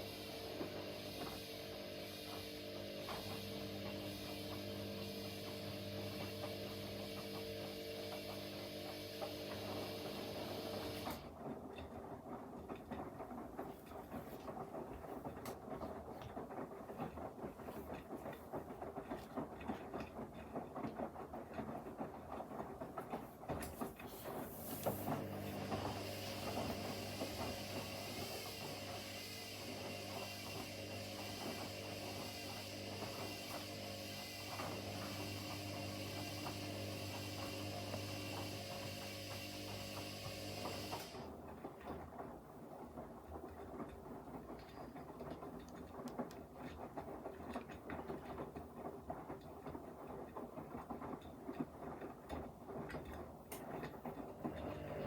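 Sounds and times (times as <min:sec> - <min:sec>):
washing machine hum with hiss: 0:00.0 - 0:55.0
washing machine drum turning: 0:23.8 - 0:41.2.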